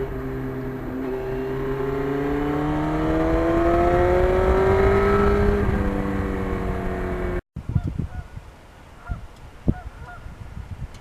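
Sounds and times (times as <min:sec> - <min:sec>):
motorcycle engine accelerating: 0:00.0 - 0:07.4.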